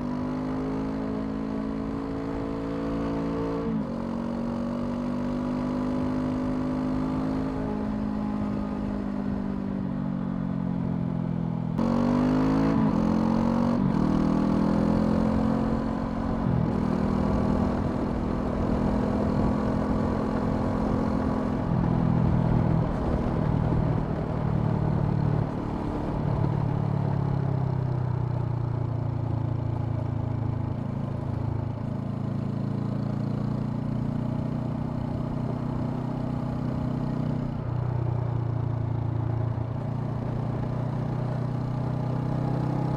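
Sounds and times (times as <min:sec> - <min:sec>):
motorcycle engine accelerating: 0:00.0 - 0:10.6, 0:11.2 - 0:42.9.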